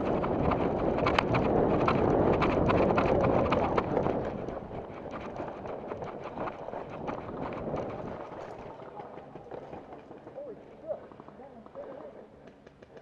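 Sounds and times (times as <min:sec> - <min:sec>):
wind on microphone: 0:00.0 - 0:10.3.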